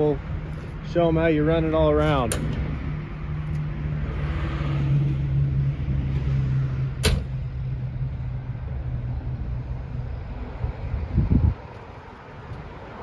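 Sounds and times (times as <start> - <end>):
outdoor noise: 0.0 - 13.0
truck door shutting: 6.9 - 7.6.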